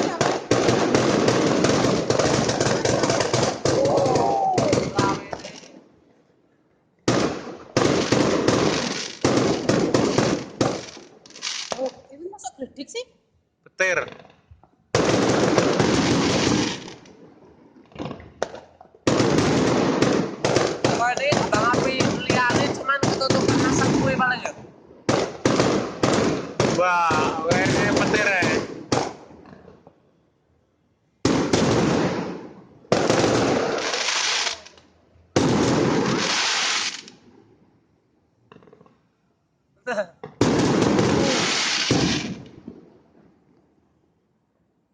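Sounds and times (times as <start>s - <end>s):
fireworks crackling: 0.0s - 5.8s, 7.1s - 12.7s, 15.0s - 17.2s, 17.9s - 29.3s, 31.3s - 37.3s, 40.4s - 42.8s.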